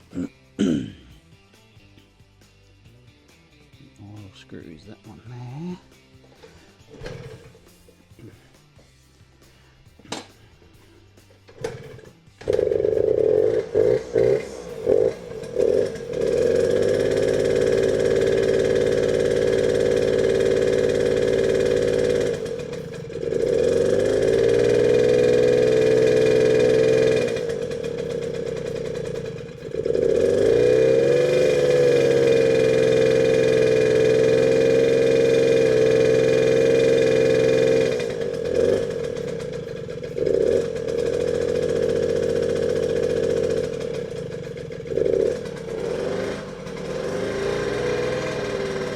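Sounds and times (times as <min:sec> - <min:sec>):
small two-stroke engine running: 0:06.1 - 0:08.8, 0:09.6 - 0:48.9.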